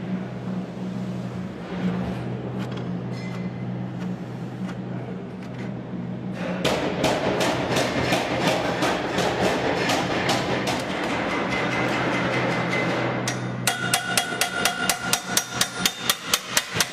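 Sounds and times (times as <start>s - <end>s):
low machine hum: 0.0s - 16.9s.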